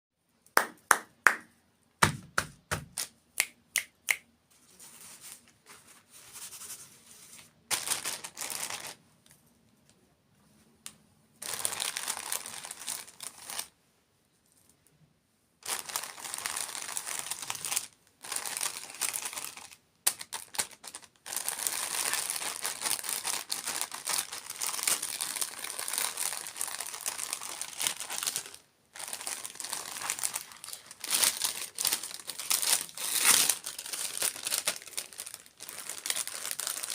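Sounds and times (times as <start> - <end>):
plastic packaging crinkling and tearing: 7.7 - 9.0, 11.4 - 13.7, 15.6 - 36.9.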